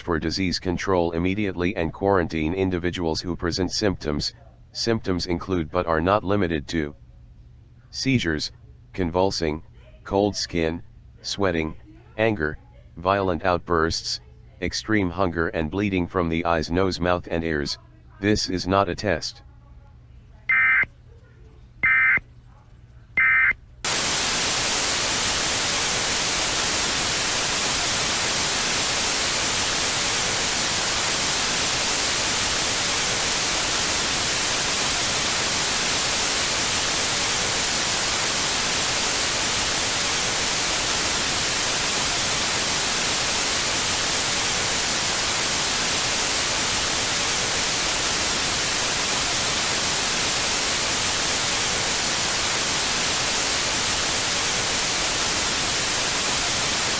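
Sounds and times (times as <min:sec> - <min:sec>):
emergency alert data tone burst: 0:20.5 - 0:20.9, 0:21.8 - 0:22.2, 0:23.2 - 0:56.9
loud static hiss: 0:20.5 - 0:20.9, 0:21.8 - 0:22.2, 0:23.2 - 0:56.9.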